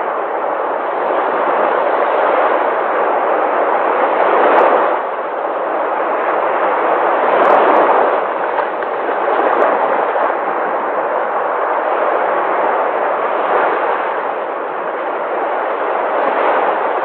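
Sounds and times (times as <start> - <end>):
sea waves breaking: 0.0 - 17.0.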